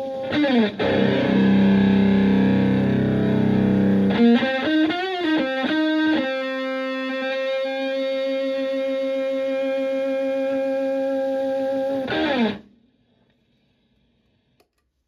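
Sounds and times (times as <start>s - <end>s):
fuzzed electric guitar notes: 0.0s - 10.8s, 11.4s - 12.6s.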